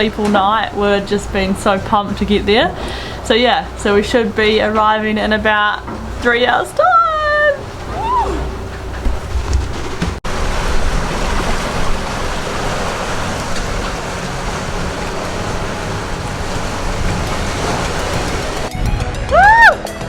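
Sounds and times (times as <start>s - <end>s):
wind and water past hull: 0.0s - 19.8s
low rumble: 7.6s - 18.7s.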